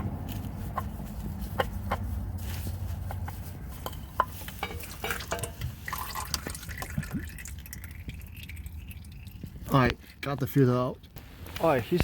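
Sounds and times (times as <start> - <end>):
oil dripping into a pan: 4.6 - 9.8.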